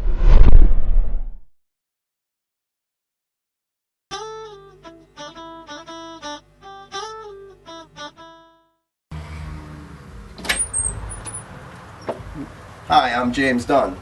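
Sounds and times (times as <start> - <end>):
plucked guitar phrase: 4.1 - 8.7.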